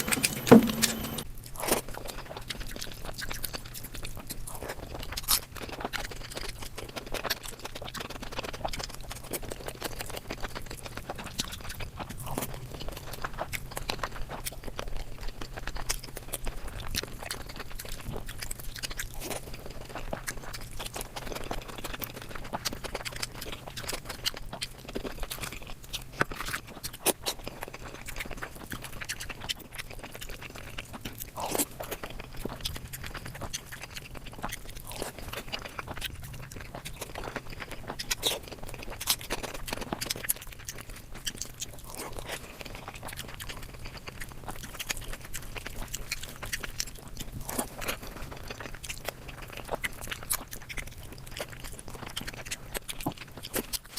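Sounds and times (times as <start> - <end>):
person chewing crunchy food: 0.0 - 53.9.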